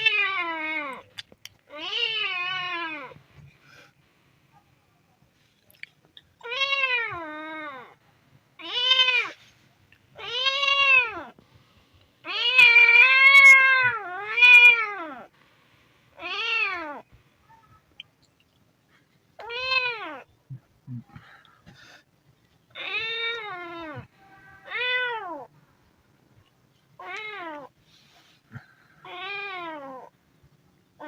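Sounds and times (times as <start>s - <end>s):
kitten meowing: 10.2s - 11.3s, 12.3s - 15.2s.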